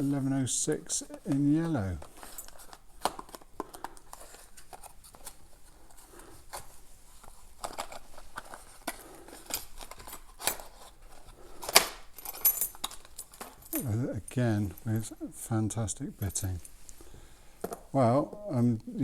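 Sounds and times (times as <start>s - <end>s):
packaging rustling: 0.9s - 15.2s.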